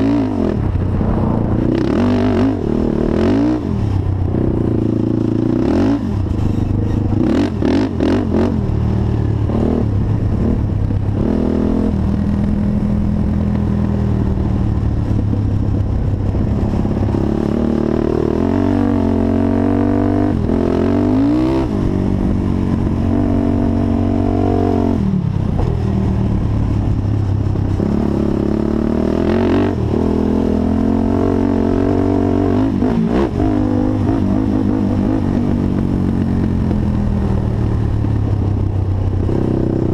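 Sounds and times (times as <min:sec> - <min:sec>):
quad engine revving: 0:00.0 - 0:08.8, 0:09.4 - 0:13.3, 0:16.6 - 0:25.7, 0:27.7 - 0:36.8.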